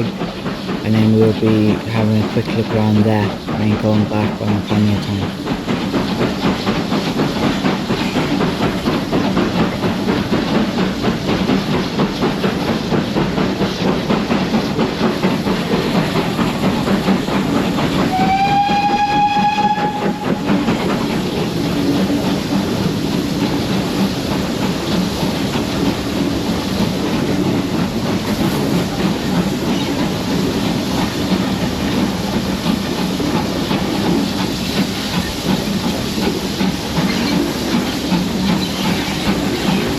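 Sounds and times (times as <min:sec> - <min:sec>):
steam locomotives chuffing: 0:00.0 - 0:39.9
steam whistle blast: 0:18.0 - 0:20.7.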